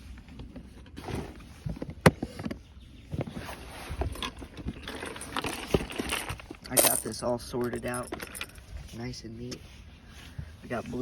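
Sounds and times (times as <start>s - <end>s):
tackle box clicks and rattles: 0.1s - 8.6s.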